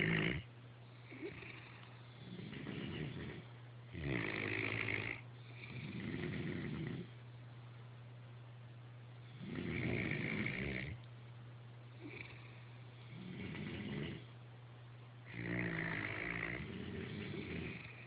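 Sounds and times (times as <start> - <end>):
loud rasping snores: 0.0 - 0.5, 1.1 - 3.4, 4.0 - 7.1, 9.3 - 11.0, 12.0 - 12.5, 13.1 - 14.3, 15.3 - 18.0
steady low hum: 0.0 - 18.0.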